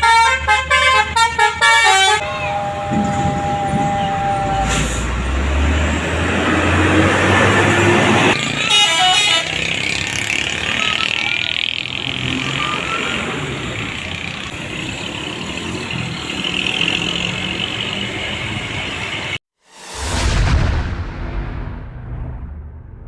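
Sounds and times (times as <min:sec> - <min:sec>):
bus multi-tone air horn: 0:00.0 - 0:05.7, 0:07.7 - 0:10.4
passing road traffic: 0:00.0 - 0:19.4.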